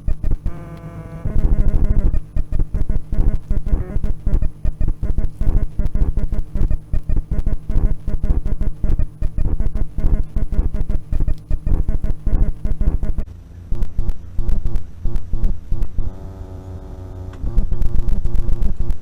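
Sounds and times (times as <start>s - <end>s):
plucked guitar and bass music: 0.0s - 13.2s.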